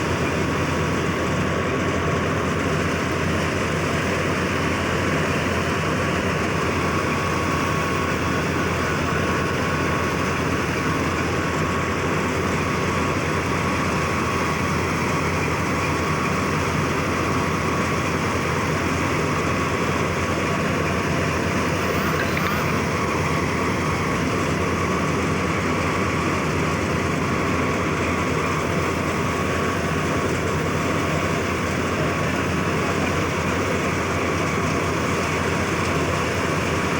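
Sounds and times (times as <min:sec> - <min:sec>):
thin steady whine: 0:13.6 - 0:36.9
thresher mechanical drone: 0:18.0 - 0:34.7.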